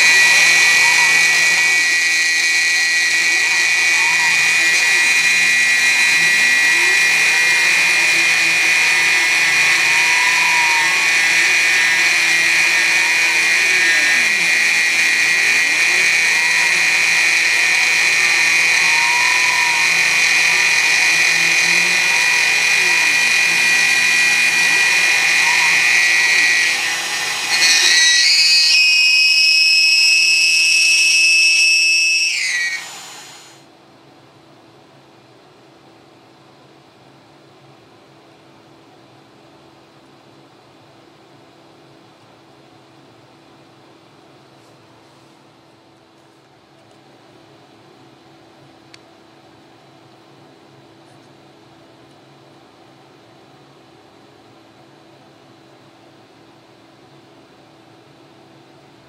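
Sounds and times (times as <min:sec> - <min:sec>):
milling machine spindle whine: 0:00.0 - 0:33.7
faint whirs: 0:00.0 - 0:59.0.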